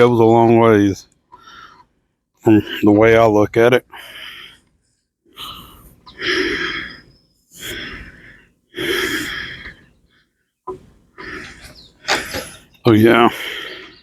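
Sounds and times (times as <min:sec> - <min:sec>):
man breathing out heavily: 0:03.9 - 0:10.3, 0:11.2 - 0:14.0.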